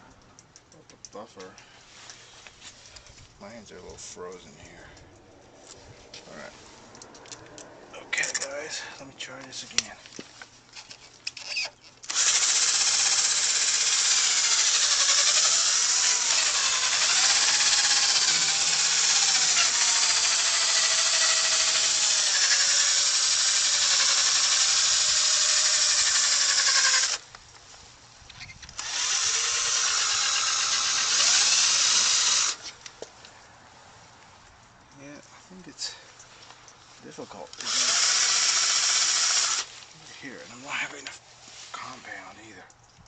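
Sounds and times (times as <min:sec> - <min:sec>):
power drill polishing: 0:12.1 - 0:27.2, 0:28.8 - 0:32.7, 0:37.6 - 0:39.7.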